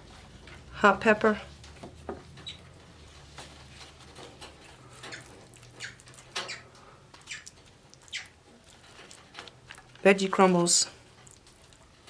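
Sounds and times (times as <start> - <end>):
soft scrapes and rustles: 0.0 - 6.3.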